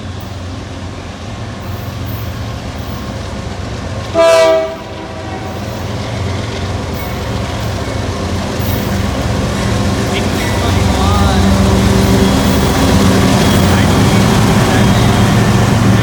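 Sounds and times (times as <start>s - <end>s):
train rumbling: 0.0s - 16.0s
locomotive air horn blast: 4.1s - 5.6s.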